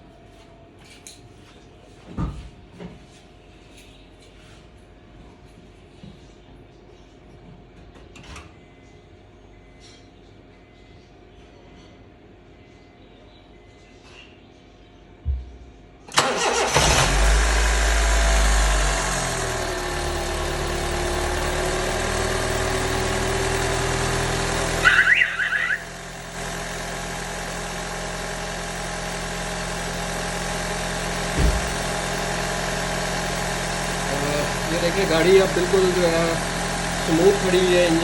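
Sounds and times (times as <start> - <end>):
car engine starting and idling: 16.1 - 38.0.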